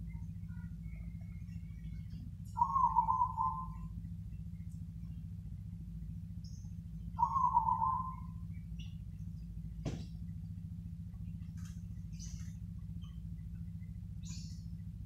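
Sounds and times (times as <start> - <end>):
small birds chirping: 0.0 - 15.0
steady low hum: 0.0 - 15.0
dove cooing: 1.9 - 4.0, 7.1 - 8.5.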